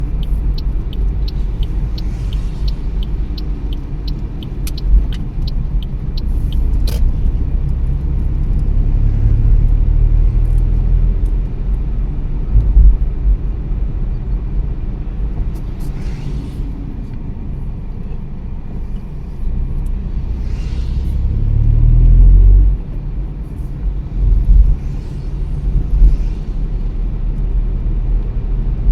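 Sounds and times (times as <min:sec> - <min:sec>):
faint regular ticking: 0:00.0 - 0:07.8
car engine and road rumble: 0:00.0 - 0:28.9.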